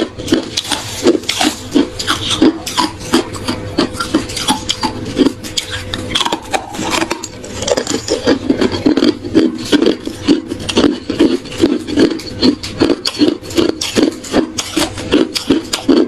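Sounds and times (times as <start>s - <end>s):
ice being chewed: 0.0s - 16.0s.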